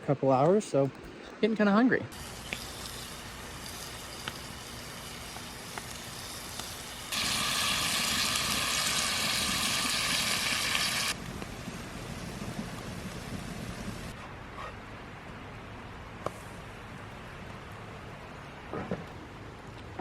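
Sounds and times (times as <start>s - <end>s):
grease popping and crackling: 2.1s - 14.1s
food sizzling in a skillet: 2.2s - 11.2s.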